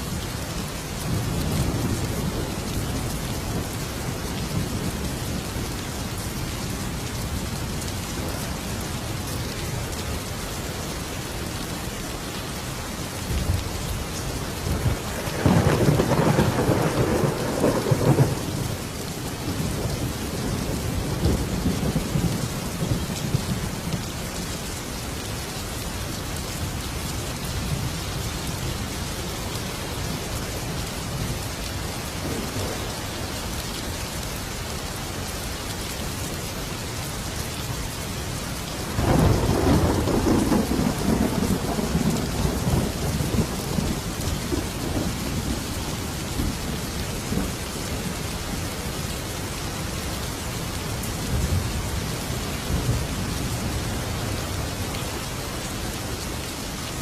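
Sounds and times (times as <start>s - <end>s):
heavy rain: 0.0s - 57.0s
thunder rumbling: 14.6s - 18.8s, 39.0s - 45.7s.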